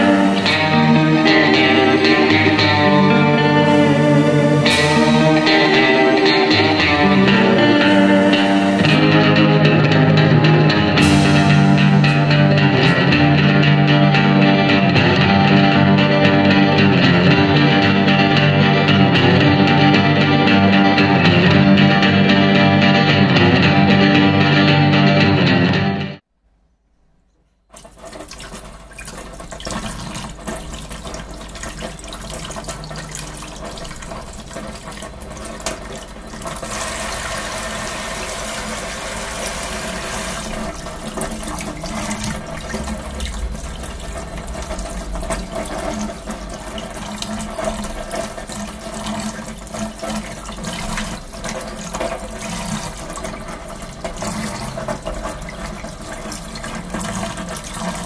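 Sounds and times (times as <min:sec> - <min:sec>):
tap water running into sink: 0:27.8 - 0:58.0.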